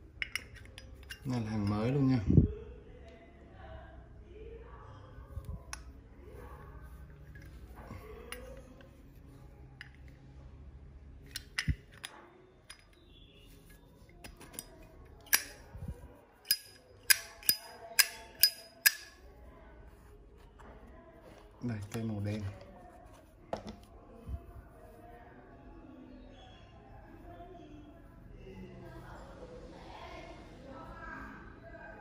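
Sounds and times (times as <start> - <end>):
metal lighter clicks and clinks: 16.4 - 19.2.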